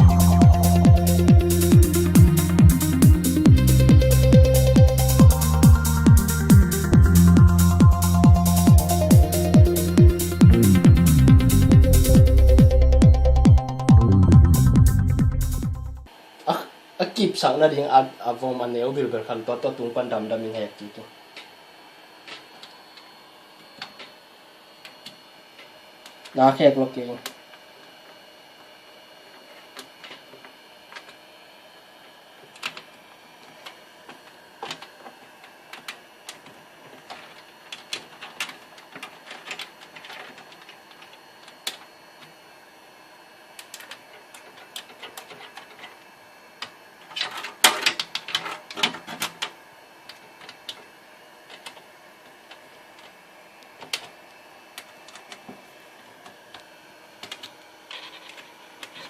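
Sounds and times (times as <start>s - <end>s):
computer hardware clicking and rattling: 37.1s - 41.8s, 57.2s - 59.0s.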